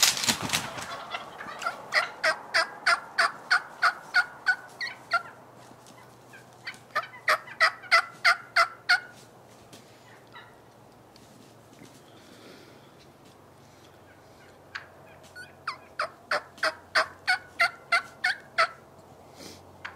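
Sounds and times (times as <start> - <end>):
turkey yelping: 0.6 - 9.2, 10.1 - 10.6, 14.0 - 18.8.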